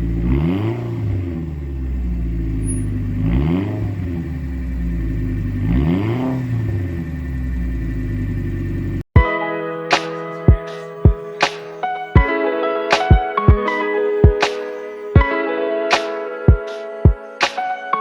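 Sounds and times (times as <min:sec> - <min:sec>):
car engine idling and revving: 0:00.0 - 0:09.1.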